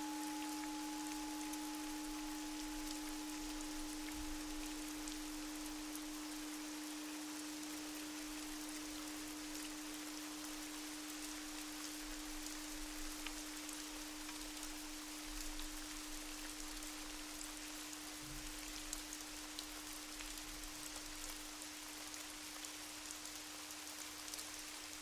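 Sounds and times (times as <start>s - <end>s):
steady drone tone: 0.0s - 13.2s
rain drop ticks: 0.0s - 24.6s
rain hissing: 0.0s - 25.0s.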